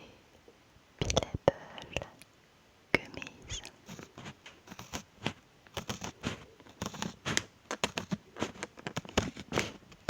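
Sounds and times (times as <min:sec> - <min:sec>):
candy packet crinkling: 0:03.9 - 0:10.0.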